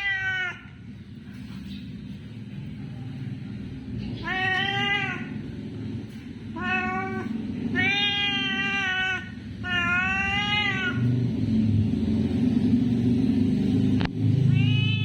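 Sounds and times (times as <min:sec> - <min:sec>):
cat meowing: 0:00.0 - 0:00.7, 0:04.2 - 0:05.4, 0:06.5 - 0:11.1, 0:14.5 - 0:15.0
low background noise: 0:00.0 - 0:15.0.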